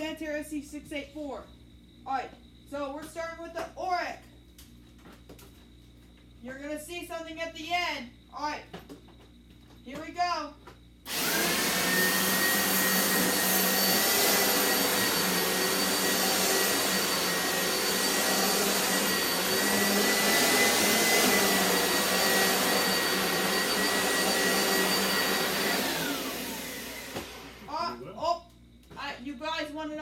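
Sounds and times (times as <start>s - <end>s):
vacuum cleaner whining: 11.0s - 28.3s
motor winding down: 11.1s - 28.0s.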